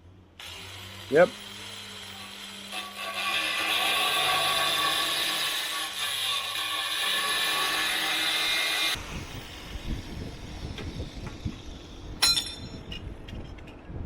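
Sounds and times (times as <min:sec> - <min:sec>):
angle grinder cutting steel: 0:00.4 - 0:11.2
sharp metallic clink: 0:12.2 - 0:13.0.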